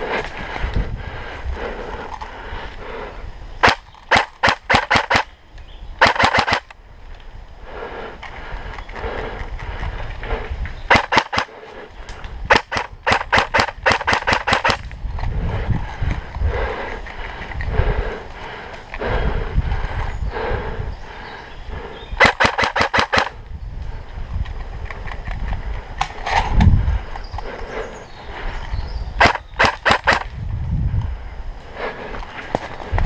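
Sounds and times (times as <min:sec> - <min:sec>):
airsoft guns firing: 0:03.6 - 0:05.4, 0:06.0 - 0:06.7, 0:10.9 - 0:11.6, 0:12.5 - 0:14.9, 0:22.2 - 0:23.4, 0:29.2 - 0:30.4.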